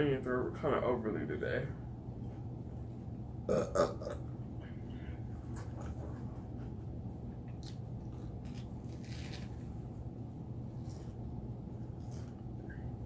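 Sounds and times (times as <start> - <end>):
loud burp: 3.5 - 4.2
crunchy chewing: 7.4 - 10.0, 10.6 - 12.8.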